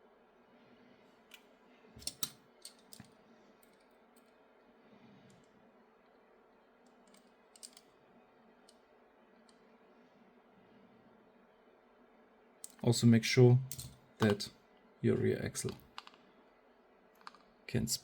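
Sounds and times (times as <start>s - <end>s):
small plastic parts clicking: 6.9s - 7.9s, 15.6s - 16.2s, 17.2s - 17.5s.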